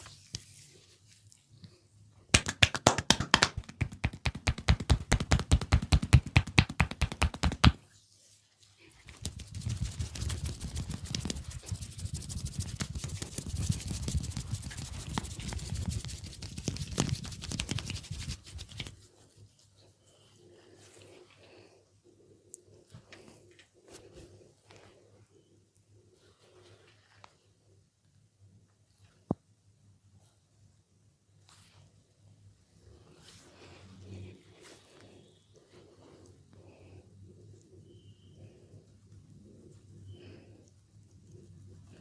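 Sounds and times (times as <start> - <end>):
hands tapping a head: 2.3 - 7.8, 9.1 - 18.9
fingers scratching through hair: 2.4 - 7.9, 8.9 - 19.7, 40.4 - 42.0.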